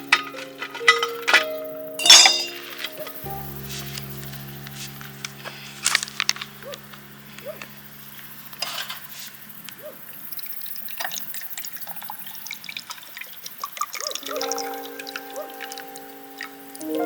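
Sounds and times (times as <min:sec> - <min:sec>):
water dripping and trickling: 0:00.0 - 0:17.0
small water plops: 0:10.4 - 0:16.9.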